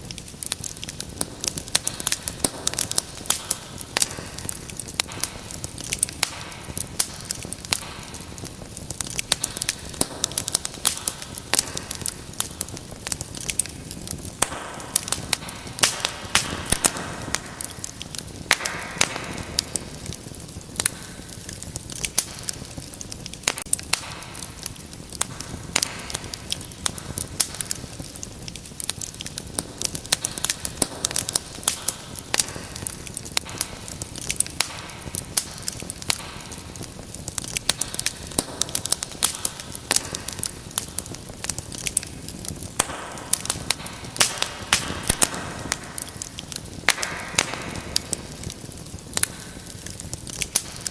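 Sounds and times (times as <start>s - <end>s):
fire crackling and popping: 0.0s - 50.9s
fire hissing: 0.0s - 50.9s.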